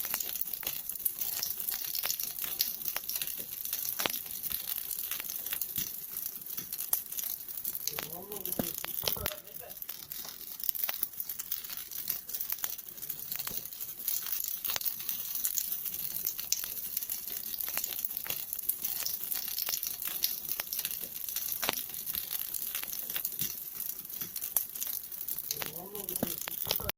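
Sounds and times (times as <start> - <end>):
campfire crackles and pops: 0.0 - 26.9
campfire hissing: 0.0 - 26.9.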